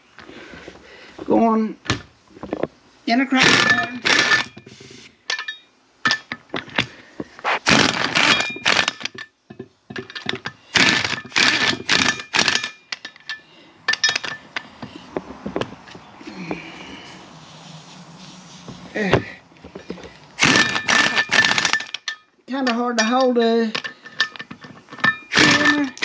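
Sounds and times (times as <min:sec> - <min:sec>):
tool clicks and clinks: 0:03.4 - 0:06.4, 0:07.7 - 0:14.7, 0:20.4 - 0:26.0.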